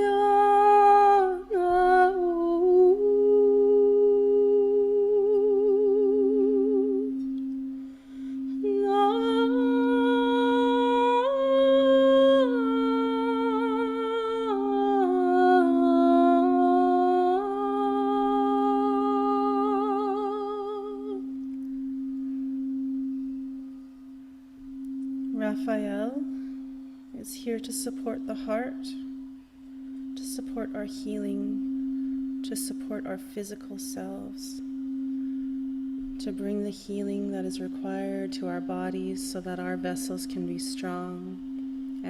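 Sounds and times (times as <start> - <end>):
woman's wordless singing: 0.0 - 7.4, 8.6 - 21.4, 30.2 - 31.7, 36.2 - 41.5
steady pure drone tone: 0.0 - 42.0.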